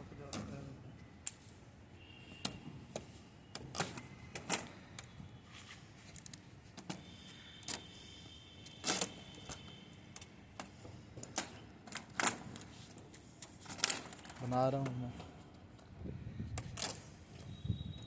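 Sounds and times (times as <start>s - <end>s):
clicks and knocks of objects handled: 0.2s - 0.6s, 2.4s - 7.9s, 8.6s - 17.5s.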